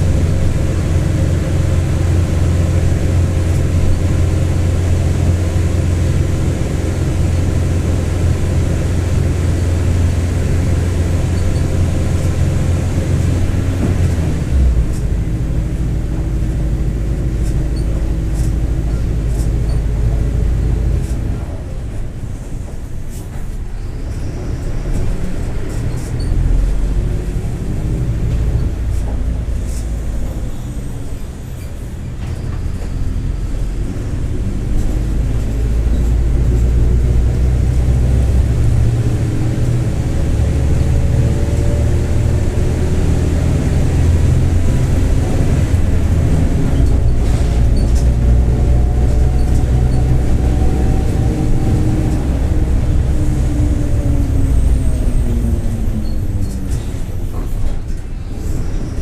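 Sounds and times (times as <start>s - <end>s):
bus diesel engine accelerating: 0.0s - 59.0s
growling differential whine: 32.8s - 59.0s.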